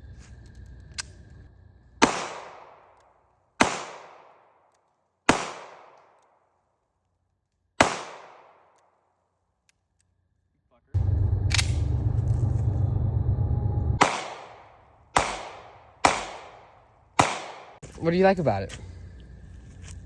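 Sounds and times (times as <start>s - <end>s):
handgun shots with echo: 2.0s - 3.0s, 3.6s - 4.6s, 5.3s - 6.4s, 7.8s - 8.9s, 14.0s - 17.8s.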